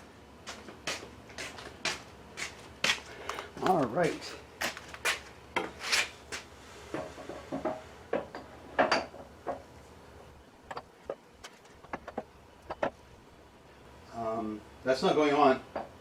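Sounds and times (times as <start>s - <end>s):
metal lathe parts knocking: 10.7s - 12.9s.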